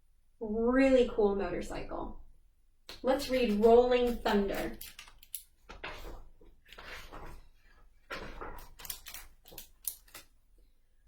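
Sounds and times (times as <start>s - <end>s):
book pages rustling: 3.2s - 10.4s.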